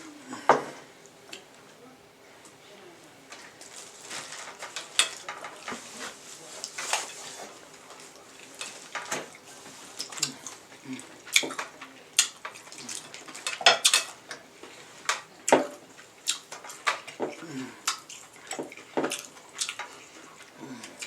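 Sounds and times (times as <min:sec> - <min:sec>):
utensils clinking: 0:03.6 - 0:14.4.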